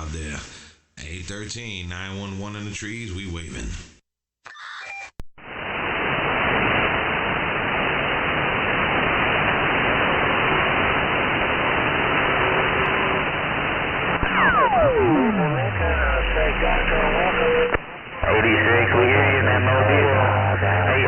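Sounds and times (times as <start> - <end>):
radio static hiss: 5.4 - 21.0.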